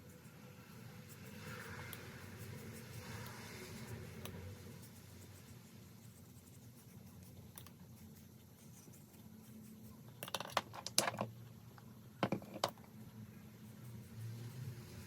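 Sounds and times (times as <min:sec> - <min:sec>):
small objects clattering on tabletop: 0:10.2 - 0:11.3, 0:12.2 - 0:12.9.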